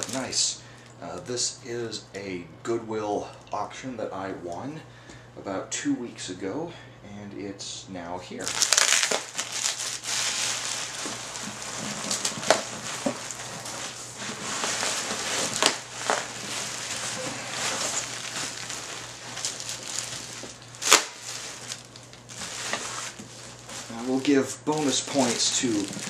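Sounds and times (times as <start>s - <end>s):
bubble wrap crinkling: 0.0s - 0.5s, 8.4s - 26.0s.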